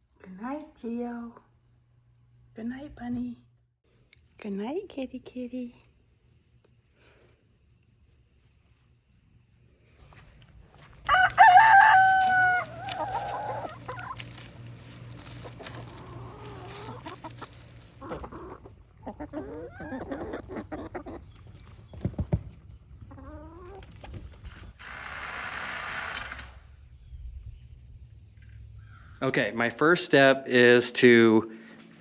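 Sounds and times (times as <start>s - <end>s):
rooster crowing: 11.0s - 14.2s
chickens clucking: 11.1s - 24.5s.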